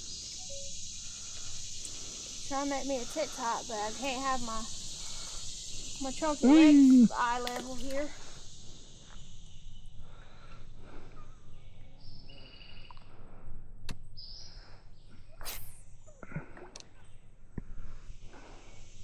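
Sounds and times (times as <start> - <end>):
bird chirping: 0.0 - 10.4, 11.1 - 13.0
high insect buzz: 0.0 - 13.0, 14.2 - 16.1
sharp clicks: 7.4 - 8.1.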